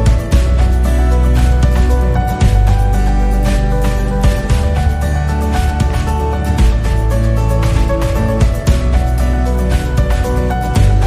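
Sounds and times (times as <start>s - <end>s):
background music with beat: 0.0s - 11.0s.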